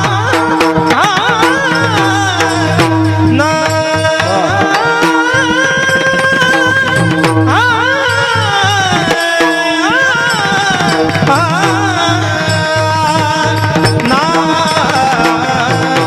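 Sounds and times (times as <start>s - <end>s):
hand drum rhythm: 0.0s - 16.0s.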